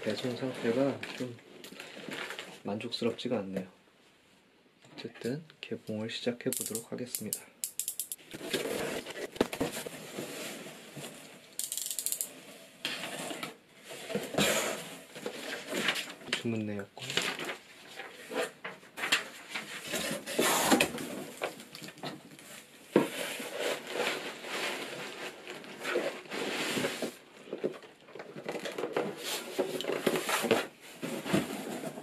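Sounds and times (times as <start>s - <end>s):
cardboard and paper rustling: 0.2s - 2.6s, 8.3s - 11.4s, 13.0s - 32.0s.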